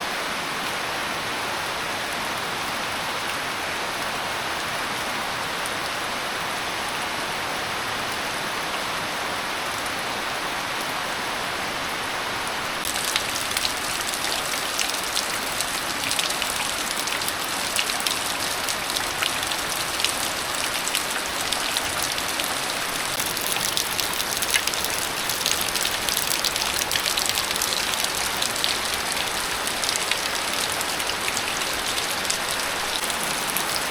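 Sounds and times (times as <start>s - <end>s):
steady rain hiss: 0.0s - 33.9s
rain drops ticking: 12.8s - 33.9s.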